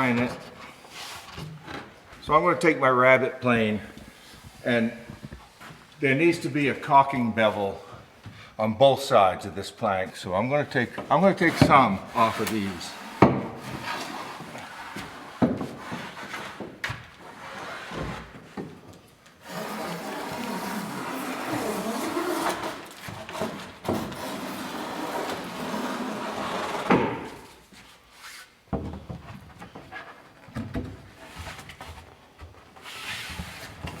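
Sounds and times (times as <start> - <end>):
tool scraping wood: 11.2 - 18.4, 19.4 - 27.6
hand plane rasping on wood: 19.4 - 26.9.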